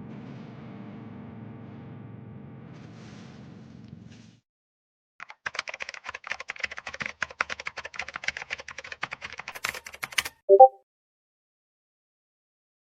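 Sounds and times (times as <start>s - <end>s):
keyboard typing: 5.2s - 10.8s.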